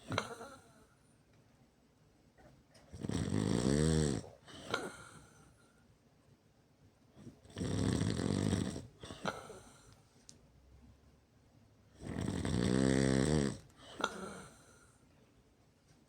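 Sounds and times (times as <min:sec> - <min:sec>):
person snoring loudly: 0:03.0 - 0:04.3, 0:12.0 - 0:14.6.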